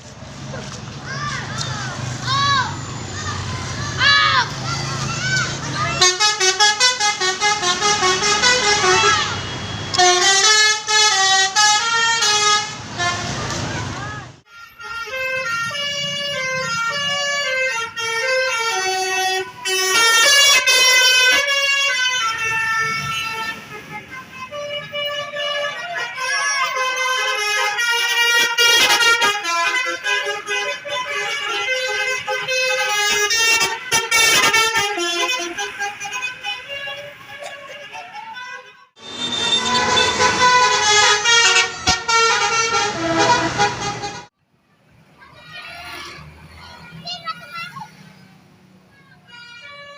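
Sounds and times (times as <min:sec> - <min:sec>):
musical vehicle horn tune: 0:06.0 - 0:13.4, 0:14.5 - 0:44.3.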